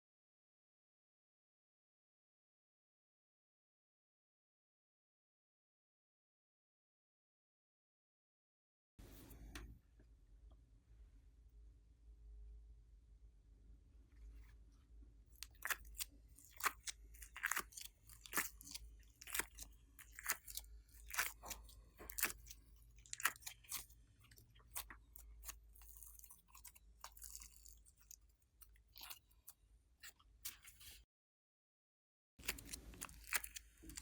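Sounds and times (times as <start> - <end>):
slime squished by hand: 15.4 - 31.0, 32.4 - 34.0.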